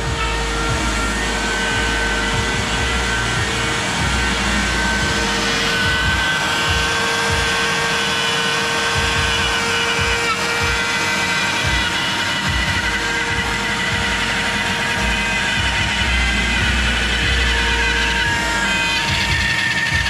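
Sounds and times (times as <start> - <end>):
power tool motor whining: 0.0 - 20.0.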